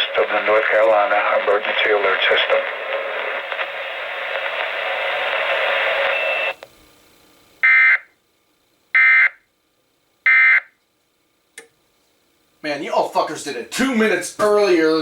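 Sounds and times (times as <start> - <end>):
radio hiss: 0.0 - 6.6
loud data tone bursts: 5.9 - 6.6.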